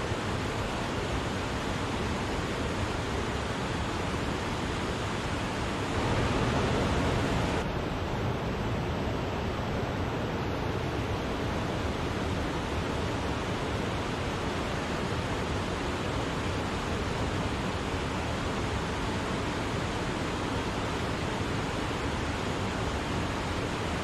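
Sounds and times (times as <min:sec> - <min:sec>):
waterfall rushing: 0:00.0 - 0:07.7.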